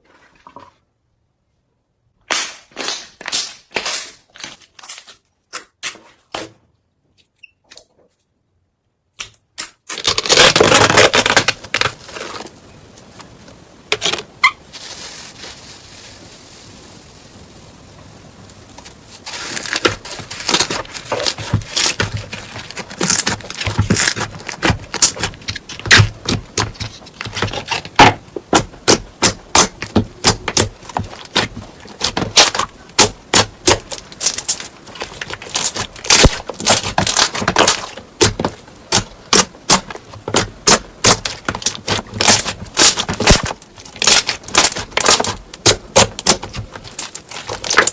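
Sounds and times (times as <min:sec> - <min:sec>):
faint steady hiss: 0:11.2 - 0:47.9.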